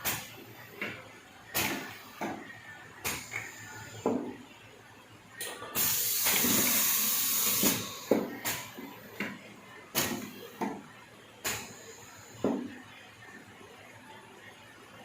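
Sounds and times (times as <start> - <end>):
machine hissing: 5.8 - 8.6.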